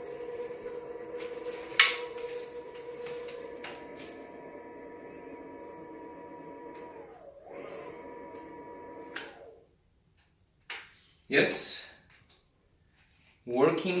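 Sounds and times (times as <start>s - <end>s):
click: 0.0s - 7.2s, 8.3s - 9.5s
electric scooter motor whine: 0.0s - 9.6s.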